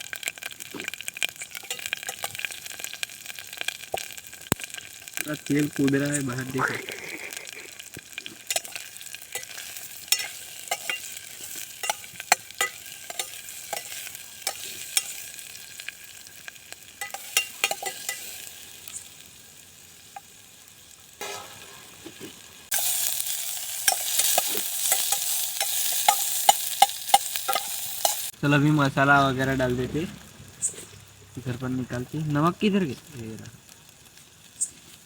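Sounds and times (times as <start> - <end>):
onions frying in oil: 0.0 - 35.0
spatula scraping a pan: 8.2 - 15.4, 17.0 - 18.5, 21.2 - 28.3.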